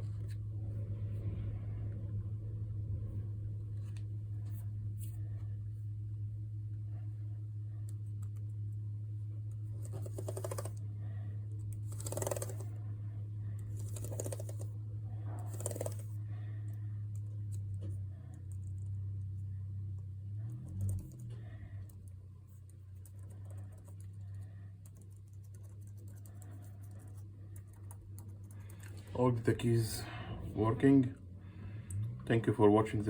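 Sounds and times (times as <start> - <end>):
steady low hum: 0.0 - 33.0
laptop keys clicking: 9.8 - 10.8, 11.7 - 12.7, 13.8 - 14.7, 15.5 - 16.1, 22.9 - 29.0.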